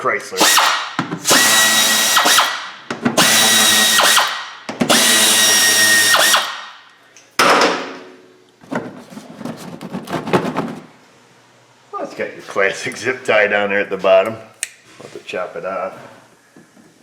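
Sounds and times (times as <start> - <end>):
power tool whining: 0.4 - 6.8.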